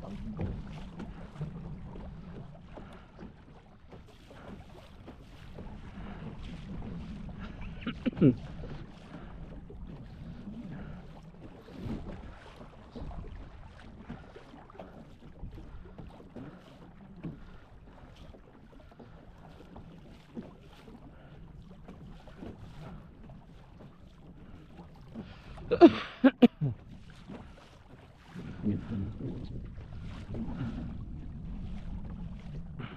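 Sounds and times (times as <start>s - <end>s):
water around canoe: 0.0s - 32.9s
wind: 0.0s - 32.9s
person coughing: 7.8s - 8.4s, 25.7s - 26.7s.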